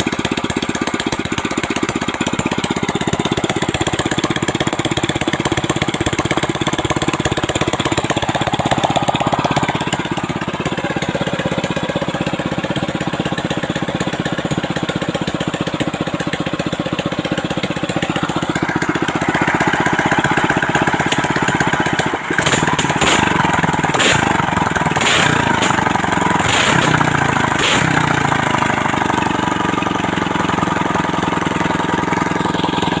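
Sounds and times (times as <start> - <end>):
longtail boat motor running: 0.0 - 33.0
motor sharp cracks: 22.3 - 24.3, 25.0 - 25.8, 26.4 - 27.0.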